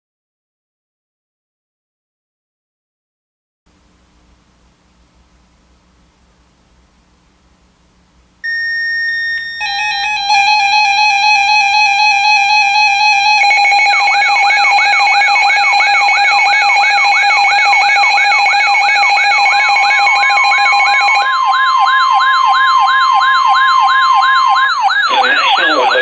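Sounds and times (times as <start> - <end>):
steady buzzy tone: 3.7 - 21.2
electronic tone sweeping downward: 8.4 - 26.0
steady alert tone: 8.4 - 26.0.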